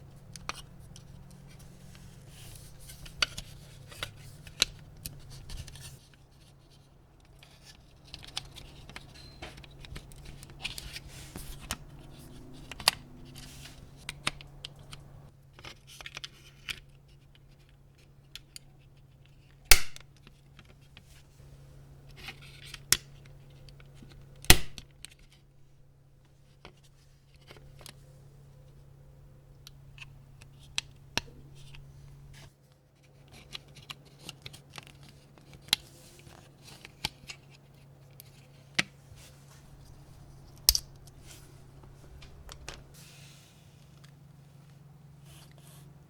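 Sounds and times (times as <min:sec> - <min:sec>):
steady low hum: 0:00.0 - 0:15.6, 0:34.7 - 0:46.0.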